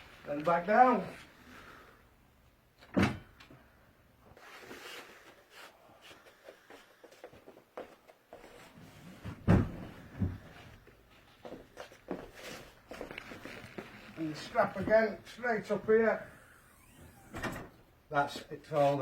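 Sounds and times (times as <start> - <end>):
bed platform thud: 9.4 - 10.4.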